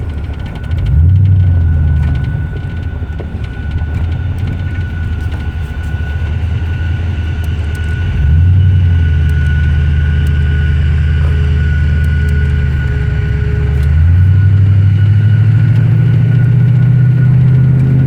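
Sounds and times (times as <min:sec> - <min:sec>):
engine running with rod knock: 0:00.0 - 0:18.0.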